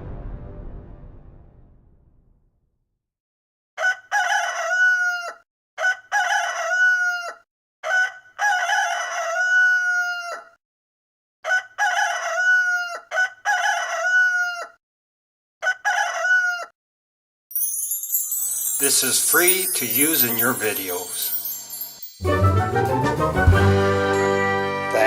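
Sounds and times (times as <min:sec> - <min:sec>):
rooster crowing: 0:03.8 - 0:10.6, 0:11.4 - 0:14.8, 0:15.6 - 0:16.7.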